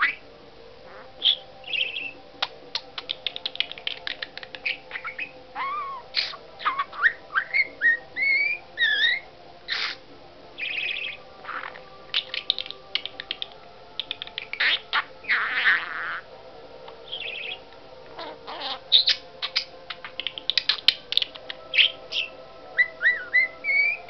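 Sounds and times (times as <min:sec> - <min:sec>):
budgerigar chattering: 0:08.3 - 0:10.0.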